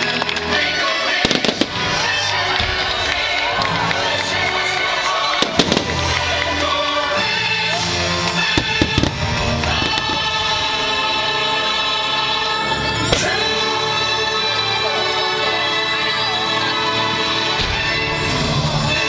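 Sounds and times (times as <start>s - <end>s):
choir singing with music: 0.0s - 19.0s
firework bangs: 1.1s - 3.7s, 5.0s - 6.4s, 8.4s - 10.7s.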